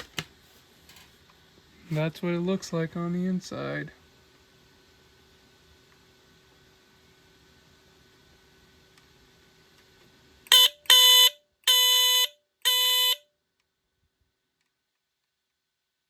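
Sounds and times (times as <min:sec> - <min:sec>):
smoke detector alarm blasts: 0:10.5 - 0:13.3.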